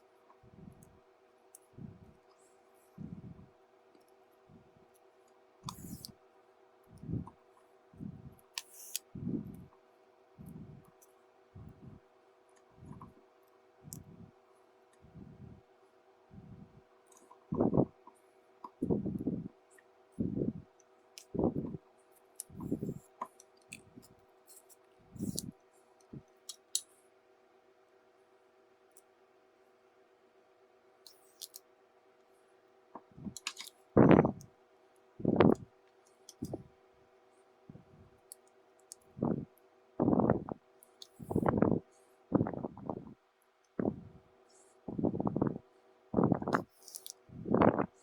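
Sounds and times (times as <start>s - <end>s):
hand-sewing handling noise: 1.6s - 6.1s, 6.9s - 9.8s, 21.2s - 26.9s, 33.0s - 34.5s, 46.2s - 48.0s
sharp clicks: 33.0s - 33.8s.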